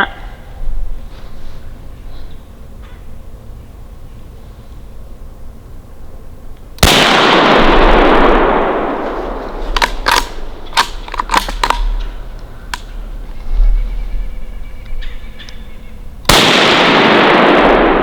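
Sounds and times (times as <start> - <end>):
rifle shot echoing: 6.8 - 13.0, 16.3 - 18.0
sharp clicks and snaps: 9.7 - 13.0.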